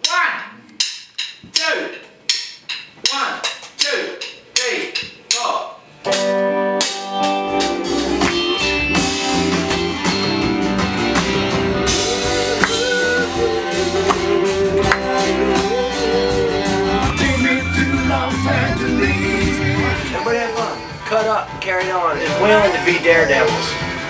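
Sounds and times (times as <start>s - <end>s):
rock band playing: 6.1s - 24.0s
person singing lead vocal: 11.9s - 21.0s.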